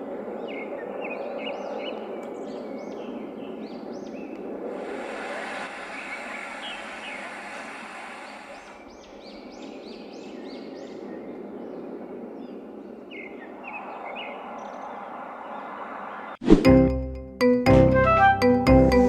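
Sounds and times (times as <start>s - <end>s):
steady rushing background: 0.0s - 16.1s
birds chirping: 0.0s - 16.4s
struck pitched notes melody: 16.6s - 19.0s.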